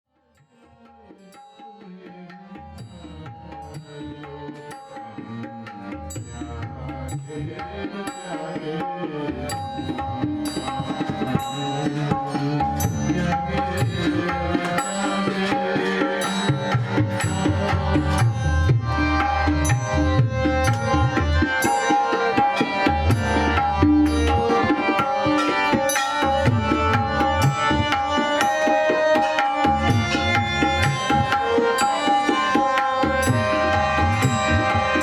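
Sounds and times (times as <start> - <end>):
hand drums playing: 9.5 - 35.0.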